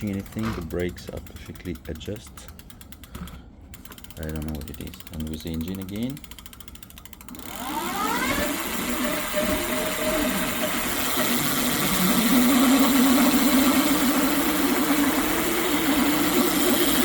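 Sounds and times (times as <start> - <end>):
electric motor wavering hum: 5.7 - 17.0.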